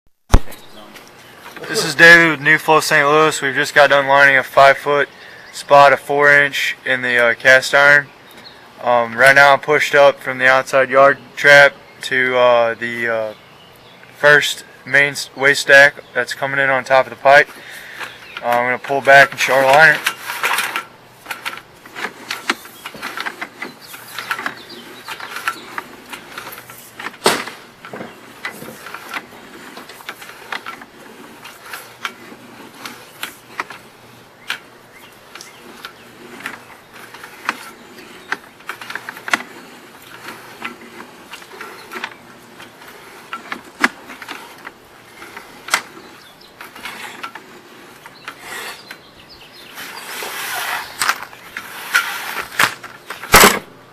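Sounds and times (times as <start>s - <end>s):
cable and reel rattling: 14.4s - 53.7s.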